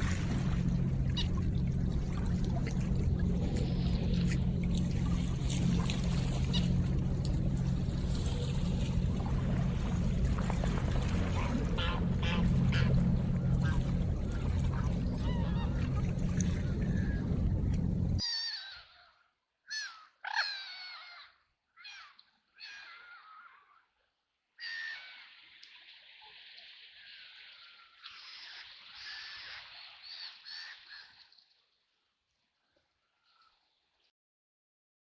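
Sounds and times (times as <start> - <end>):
water rushing with low rumble: 0.0 - 18.2
ducks honking: 0.0 - 18.7
soft hiss of water: 25.2 - 30.2.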